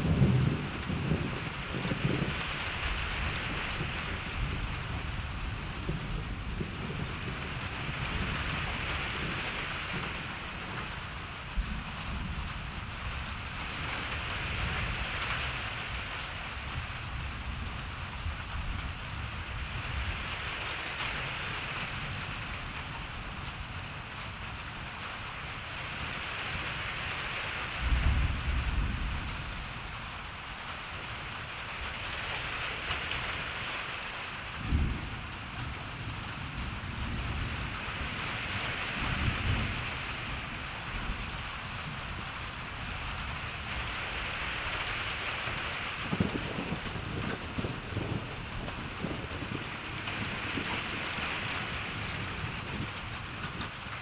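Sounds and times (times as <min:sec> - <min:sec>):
low thunder rumble: 0:00.0 - 0:26.9, 0:27.6 - 0:33.7, 0:34.4 - 0:54.0
rain falling: 0:00.0 - 0:54.0.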